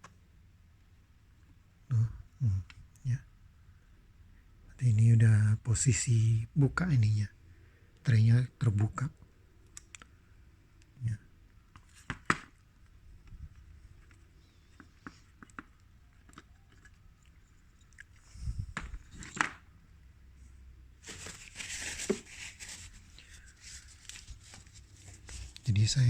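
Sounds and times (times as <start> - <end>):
crinkling rustle: 10.8 - 19.7, 20.4 - 26.0.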